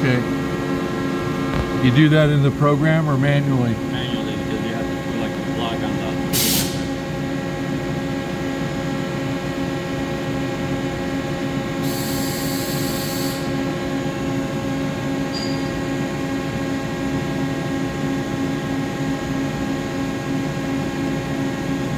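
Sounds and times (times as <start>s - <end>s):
hiss: 6.3s - 7.0s, 11.8s - 13.5s.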